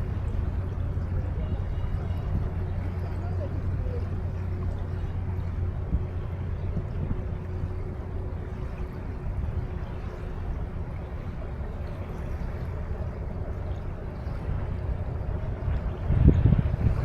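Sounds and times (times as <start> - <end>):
river water: 0.0 - 17.0
wind: 0.0 - 17.0.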